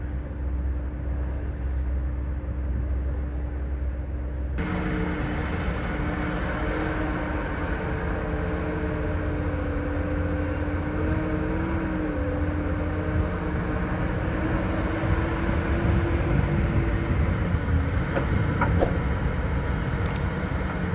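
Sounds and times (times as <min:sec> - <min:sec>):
diesel engine running: 0:00.0 - 0:20.9.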